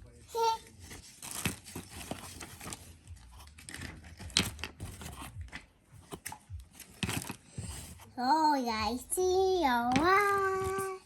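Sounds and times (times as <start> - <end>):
packaging crinkling and tearing: 0.6 - 5.4.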